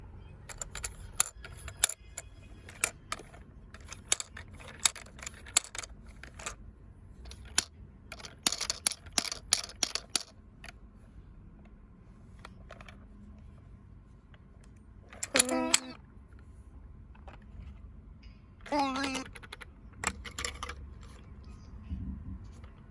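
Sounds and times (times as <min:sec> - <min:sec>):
toy pieces clicking and clacking: 0:00.5 - 0:06.6, 0:07.2 - 0:10.3, 0:15.1 - 0:16.0, 0:18.7 - 0:21.2.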